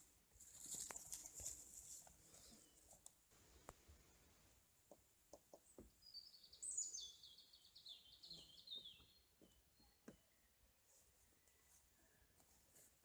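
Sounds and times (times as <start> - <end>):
songbird singing: 5.3 - 12.2.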